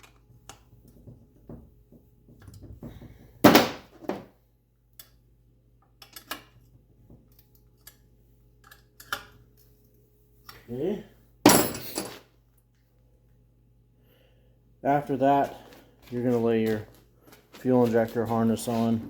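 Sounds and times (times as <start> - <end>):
metal tools clinking: 11.5 - 12.2.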